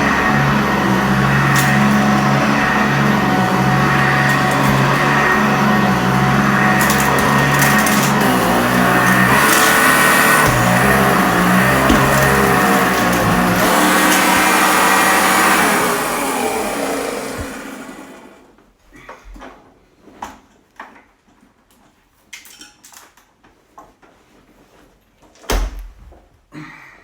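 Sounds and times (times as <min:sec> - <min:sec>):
upright vacuum cleaner running: 0:00.0 - 0:18.6.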